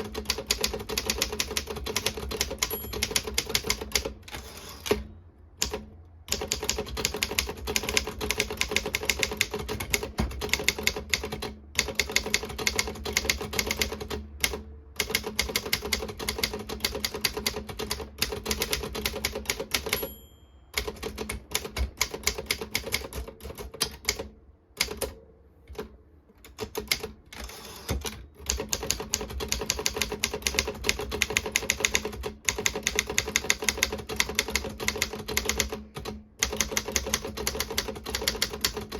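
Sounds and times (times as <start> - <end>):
typewriter key strikes: 0.0 - 5.0, 5.6 - 20.2.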